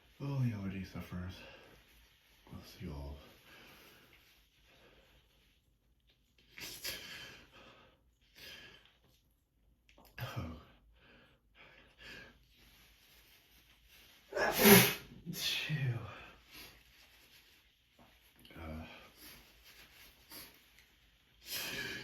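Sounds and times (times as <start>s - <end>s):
man gasping and sniffing: 14.3s - 15.0s
man sneezing: 14.3s - 15.2s.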